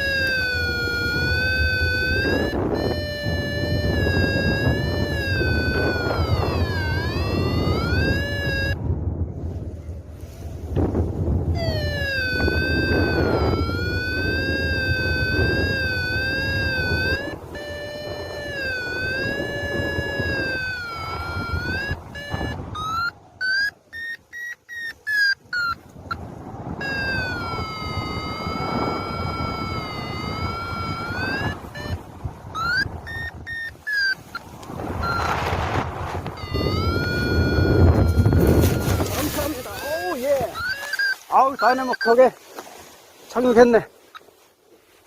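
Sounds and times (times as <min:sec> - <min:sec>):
variometer wavering tone: 0:00.0 - 0:08.9, 0:11.4 - 0:42.2
wind rushing on microphone: 0:00.0 - 0:24.1, 0:25.4 - 0:43.9
variometer quick short beeps: 0:11.6 - 0:25.8, 0:32.6 - 0:35.4, 0:36.4 - 0:42.2.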